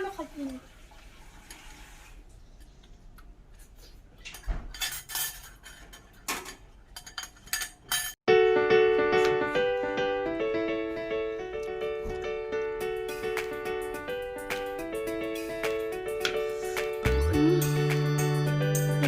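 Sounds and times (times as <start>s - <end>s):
dishes and utensils clinking: 3.7s - 8.2s
piano background music: 8.3s - 19.0s.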